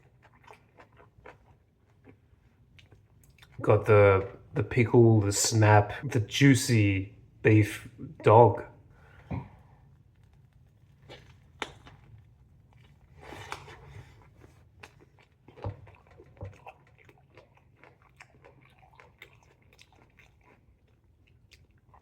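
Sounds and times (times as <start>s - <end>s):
small crunches while chewing: 0.0s - 4.4s, 9.0s - 22.0s
wet chewing sounds: 0.0s - 4.8s, 8.9s - 22.0s.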